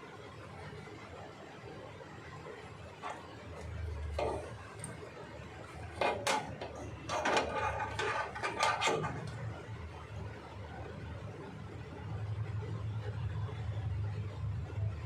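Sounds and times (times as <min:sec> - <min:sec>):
hard objects clicking and rattling: 0:03.0 - 0:09.6.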